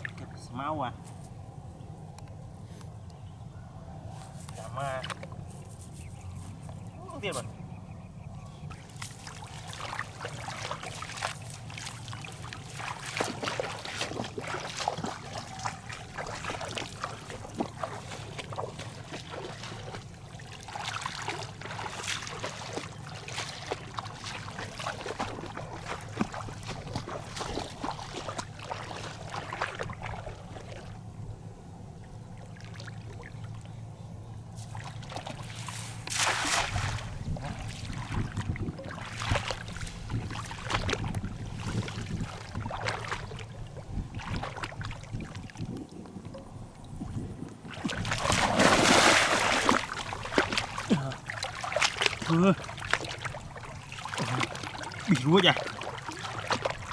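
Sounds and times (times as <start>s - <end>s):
steady low hum: 0.0s - 56.9s
water splashing and trickling: 8.6s - 56.9s.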